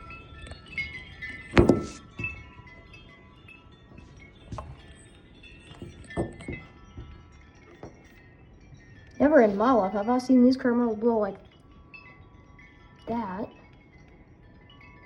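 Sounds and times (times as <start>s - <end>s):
metal wind chime ringing: 0.0s - 15.0s
soft thumps: 1.5s - 2.4s.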